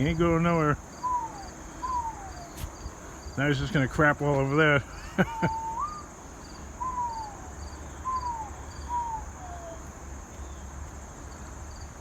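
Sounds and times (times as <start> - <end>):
crickets chirring: 0.0 - 12.0
whistled notes sliding down: 1.0 - 2.7, 5.4 - 6.1, 6.8 - 9.8.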